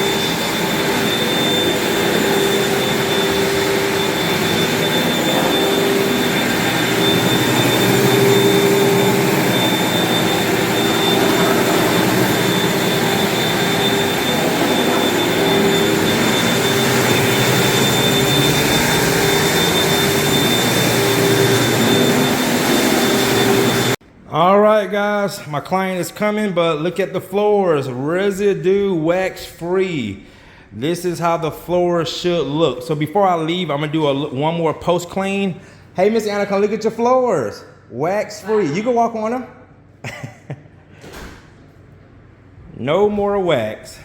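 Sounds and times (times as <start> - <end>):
floor cleaning machine whining: 0.0 - 24.0.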